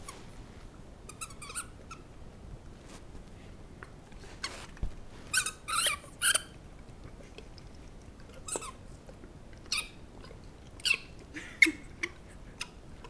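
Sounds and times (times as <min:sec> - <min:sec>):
squeaky dog toy squeaking: 0:01.1 - 0:02.0, 0:05.4 - 0:06.5.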